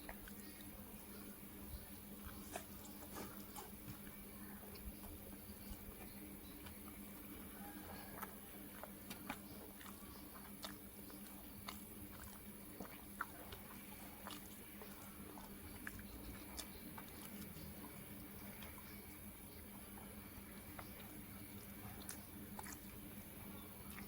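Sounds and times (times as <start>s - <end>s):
chewing and crunching: 0.0s - 24.0s
faint steady hum: 0.0s - 24.0s.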